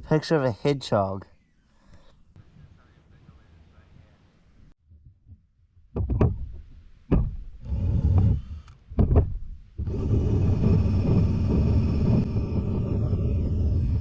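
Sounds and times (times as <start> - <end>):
drill with wire brush on steel: 7.6 - 8.8, 9.8 - 14.0.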